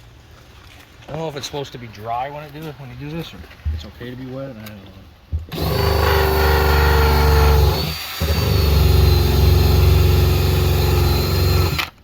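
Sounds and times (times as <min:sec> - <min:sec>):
power drill motor whining: 0:05.5 - 0:12.0.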